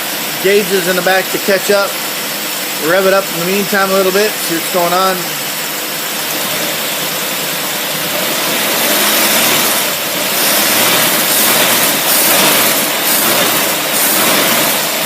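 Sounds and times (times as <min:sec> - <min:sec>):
boat engine revving: 0:06.2 - 0:15.0.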